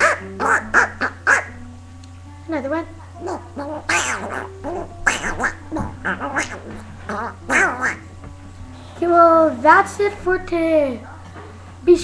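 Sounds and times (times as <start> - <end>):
person imitating duck quacks: 0.0 - 1.6, 3.2 - 8.1.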